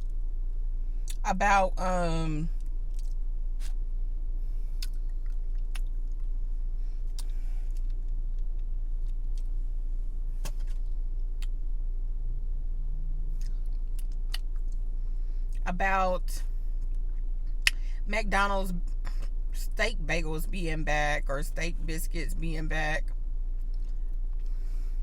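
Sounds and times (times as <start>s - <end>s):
steady low hum: 0.0s - 25.0s
chewing food: 2.6s - 3.8s, 4.8s - 6.3s, 7.0s - 9.5s.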